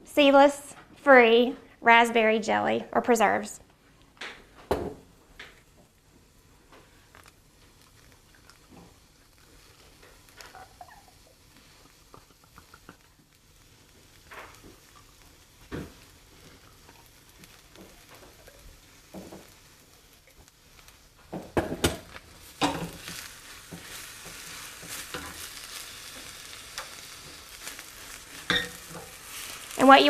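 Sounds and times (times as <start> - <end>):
food sizzling in a pan: 4.7 - 30.0
utensil scraping a frying pan: 22.1 - 29.9.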